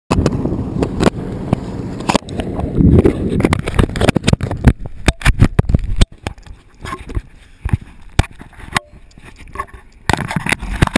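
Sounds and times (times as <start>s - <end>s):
jet ski engine rumble: 0.1s - 8.1s.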